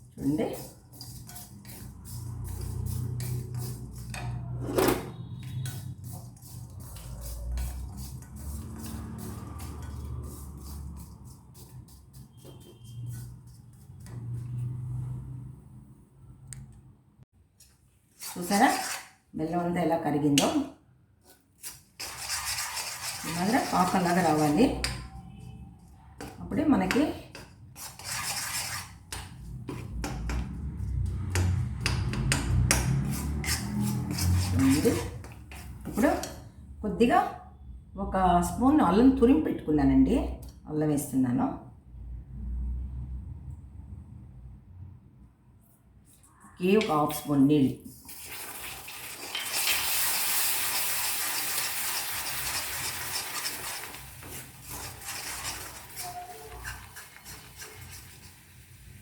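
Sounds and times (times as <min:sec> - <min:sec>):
spoon stirring in a pan: 0:00.0 - 0:14.5, 0:17.6 - 0:19.2, 0:21.2 - 0:36.5, 0:47.9 - 0:59.0
spoon scraping and knocking in pan: 0:26.2 - 0:36.5, 0:49.2 - 0:58.6
syrup sizzling in a pan: 0:48.2 - 0:59.0.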